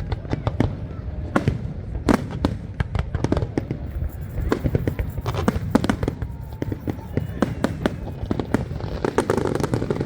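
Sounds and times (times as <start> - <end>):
fireworks bangs: 0.0 - 10.0.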